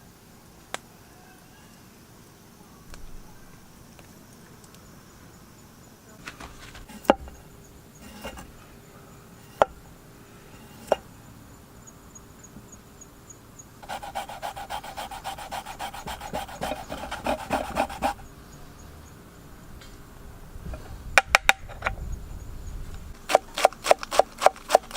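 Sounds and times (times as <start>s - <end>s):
fast rasping strokes: 8.0s - 8.6s, 13.8s - 18.2s.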